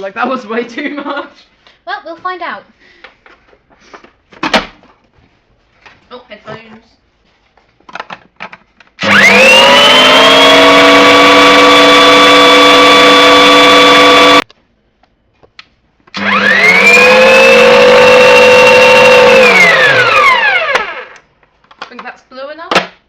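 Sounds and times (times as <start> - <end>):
electric mixer motor running: 9.0 - 14.4, 16.2 - 21.2.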